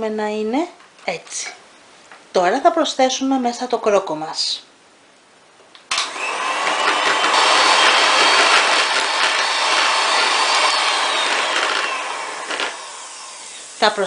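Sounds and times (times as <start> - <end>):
electric hand mixer running: 5.9 - 14.0.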